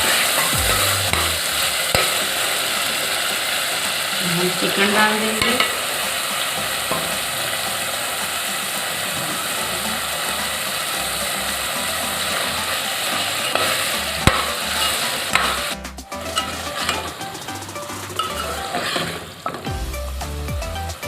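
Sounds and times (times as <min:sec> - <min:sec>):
meat sizzling in a pot: 0:00.0 - 0:21.0.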